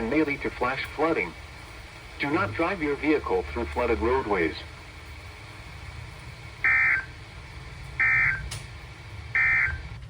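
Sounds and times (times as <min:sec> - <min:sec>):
digital data tone bursts: 0:08.0 - 0:08.4.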